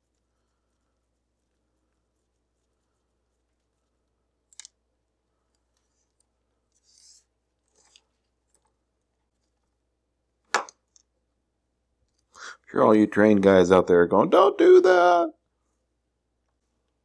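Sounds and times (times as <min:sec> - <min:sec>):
small parts clicking: 0:04.5 - 0:04.8.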